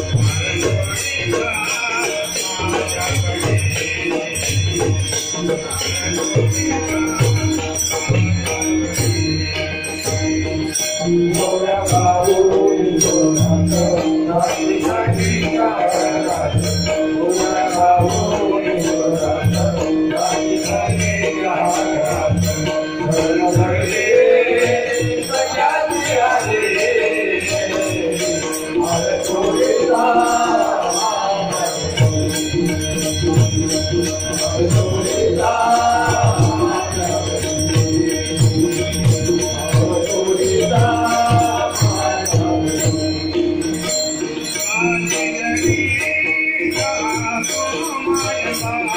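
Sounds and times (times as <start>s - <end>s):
metallic jingling percussion: 0.0s - 48.9s
group devotional singing: 11.1s - 43.0s.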